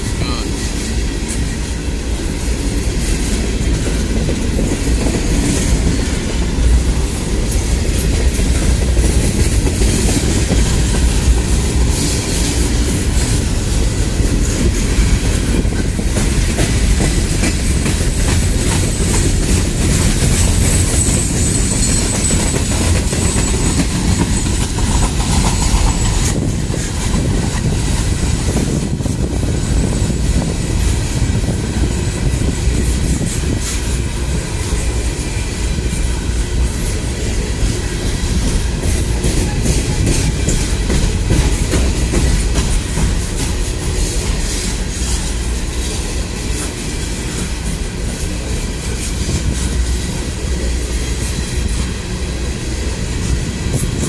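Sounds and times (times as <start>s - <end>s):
train cars rumbling past: 0.0s - 54.0s
wheels clicking over rail joints: 0.6s - 52.4s
faint high wheel squeal: 20.7s - 24.5s.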